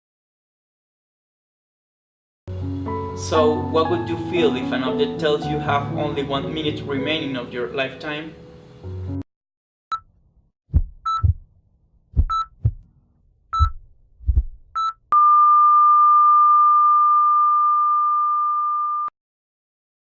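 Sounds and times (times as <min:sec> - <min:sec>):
heartbeat thumping: 0:10.7 - 0:11.5, 0:12.1 - 0:12.9, 0:13.6 - 0:14.9
short electronic beeps: 0:11.0 - 0:11.4, 0:12.3 - 0:12.6, 0:13.6 - 0:13.8, 0:14.8 - 0:17.4
long flat monitor tone: 0:14.8 - 0:19.1.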